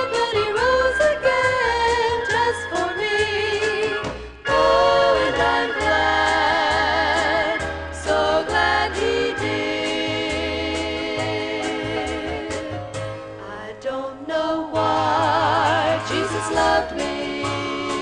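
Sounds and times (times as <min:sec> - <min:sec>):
gospel singing voice: 0:00.0 - 0:12.8, 0:13.4 - 0:18.0
steady bass line: 0:00.5 - 0:13.3.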